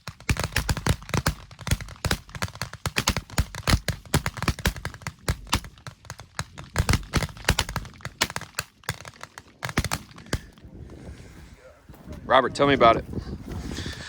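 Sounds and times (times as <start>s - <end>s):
rapid rifle shots: 0.0s - 10.7s.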